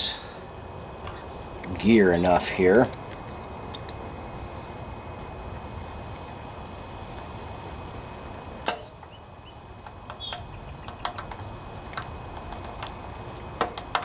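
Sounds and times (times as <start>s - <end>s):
bird chirping: 9.0s - 11.6s
sharp metal clicks and taps: 9.8s - 14.0s.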